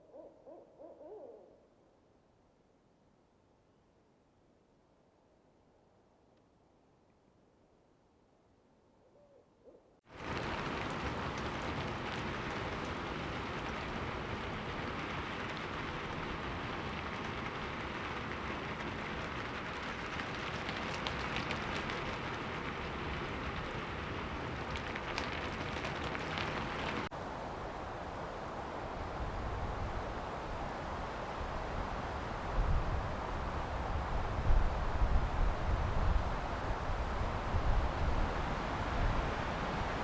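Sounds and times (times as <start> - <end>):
steady rain with crackling drops: 10.1 - 40.0.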